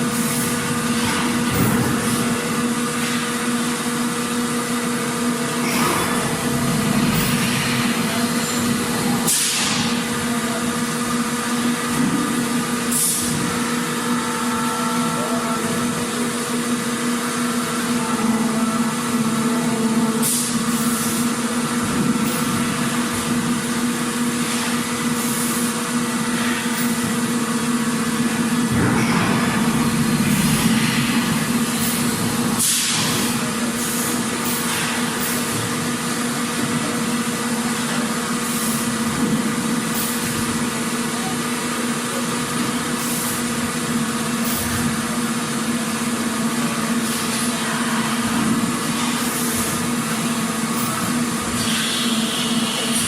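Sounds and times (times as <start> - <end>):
machinery humming: 0.0 - 53.0.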